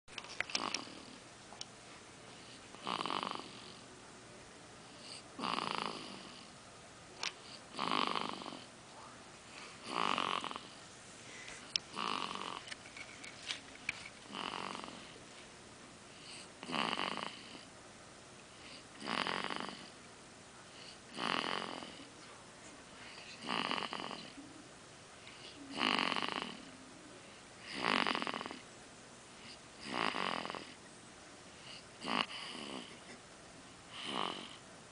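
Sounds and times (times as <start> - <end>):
baby snoring: 0.5 - 1.2, 2.4 - 3.8, 5.0 - 6.5, 7.4 - 8.7, 9.8 - 10.8, 11.9 - 12.8, 14.3 - 15.2, 16.2 - 17.7, 18.6 - 20.0, 20.8 - 22.1, 23.0 - 24.4, 25.3 - 26.8, 27.6 - 28.6, 29.4 - 30.8, 31.6 - 33.2, 33.9 - 34.6.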